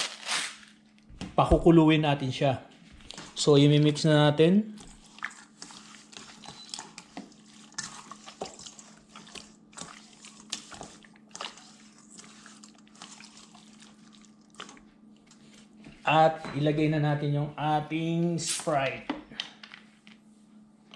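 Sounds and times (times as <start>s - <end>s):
faint steady hum: 0.0s - 20.9s
wet squishing and sloshing: 4.8s - 16.1s.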